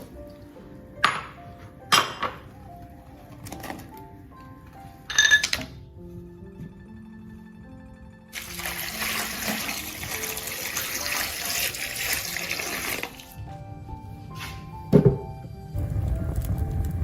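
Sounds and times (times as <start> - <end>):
soft background music: 0.0 - 17.0
tap water running into sink: 8.4 - 13.4.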